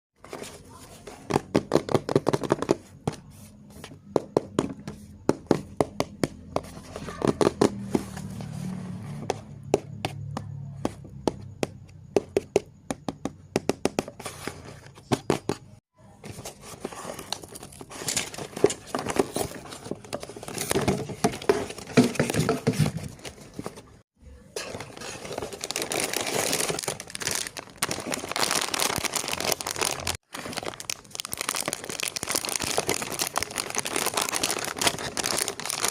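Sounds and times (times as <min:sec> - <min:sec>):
plastic wrapping crinkling and tearing: 0:24.9 - 0:35.9.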